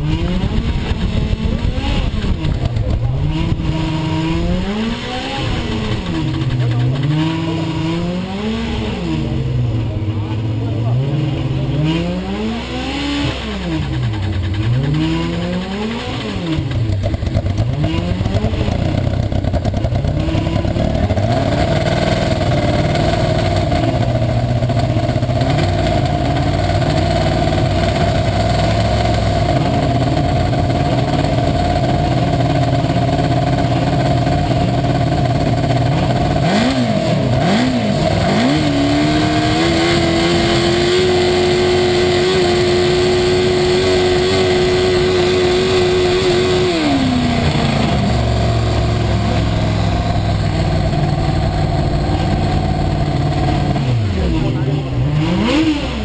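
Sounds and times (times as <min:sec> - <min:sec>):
race car engine revving: 0:00.0 - 0:56.0.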